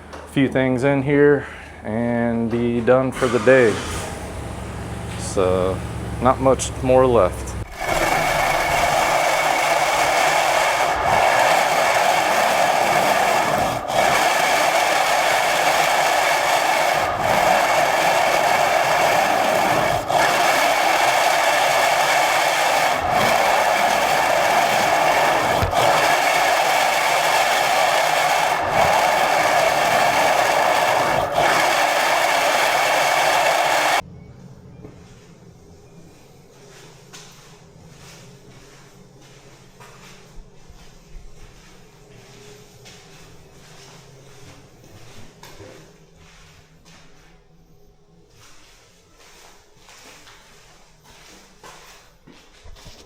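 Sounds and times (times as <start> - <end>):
floor scraper scraping: 3.2 - 34.0.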